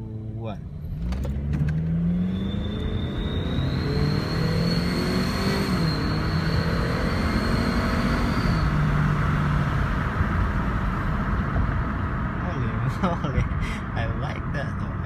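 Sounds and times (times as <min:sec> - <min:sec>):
car engine accelerating: 0:00.0 - 0:15.0
high turbo whistle: 0:02.2 - 0:09.3.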